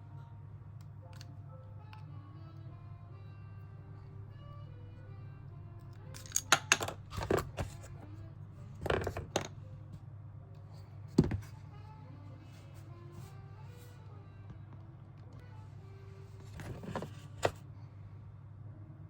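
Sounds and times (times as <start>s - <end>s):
soft background music: 0.0s - 19.0s
steady low hum: 0.0s - 19.0s
small hard parts clicking: 6.1s - 7.8s.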